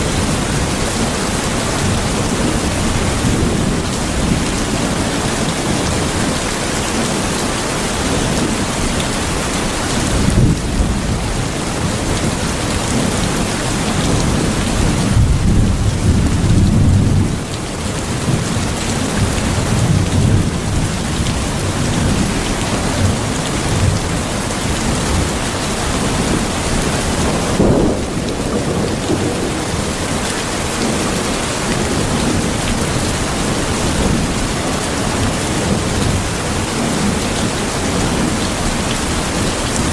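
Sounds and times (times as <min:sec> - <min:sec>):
heavy rain falling: 0:00.0 - 0:39.9
rolling thunder: 0:24.9 - 0:34.4.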